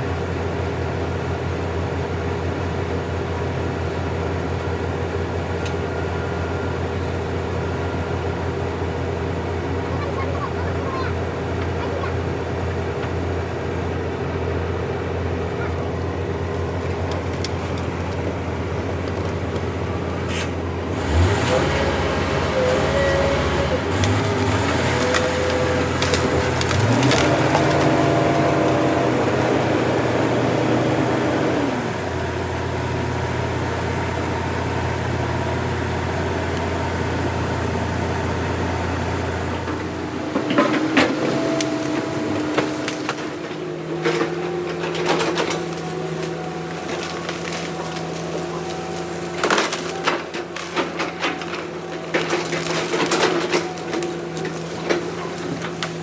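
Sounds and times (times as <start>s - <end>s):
heavy machinery diesel engine running: 0.0s - 56.0s
sharp cracks and knocks of wood: 16.8s - 19.7s, 23.5s - 30.2s, 39.6s - 56.0s.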